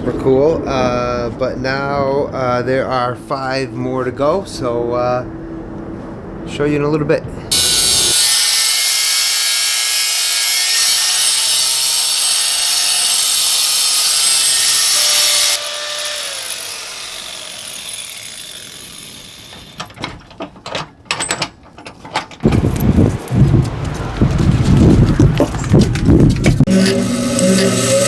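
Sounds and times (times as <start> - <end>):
power tool cutting metal: 7.5 - 19.8, 26.6 - 28.0
clicks and knocks: 19.8 - 22.9.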